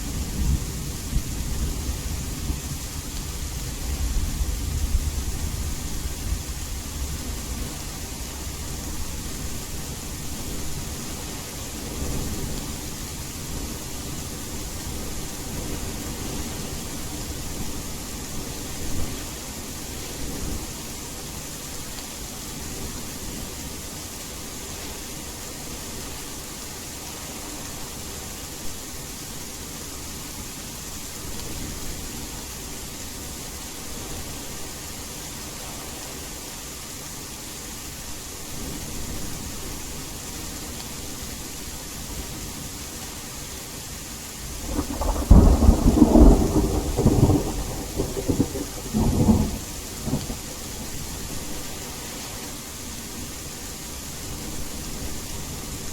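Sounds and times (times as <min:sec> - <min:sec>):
steady rain falling: 0:00.0 - 0:55.9
thunder rumbling: 0:44.6 - 0:50.4.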